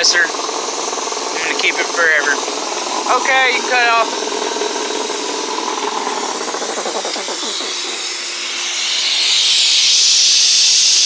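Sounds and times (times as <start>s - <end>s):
air compressor winding down: 0.0s - 11.0s
hiss of escaping air: 2.4s - 11.0s.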